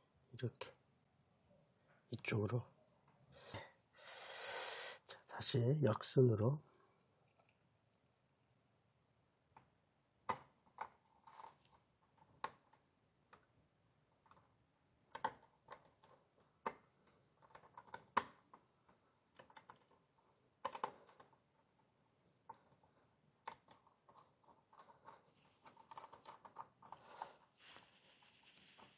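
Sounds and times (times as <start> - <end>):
small clicks and taps of tools: 7.0 - 8.2.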